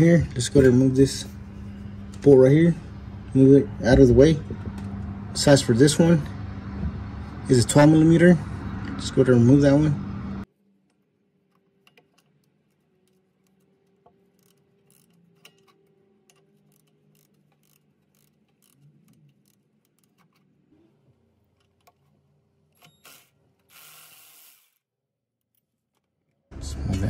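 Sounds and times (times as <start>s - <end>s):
ratchet clicking: 11.5s - 20.6s, 22.7s - 24.8s.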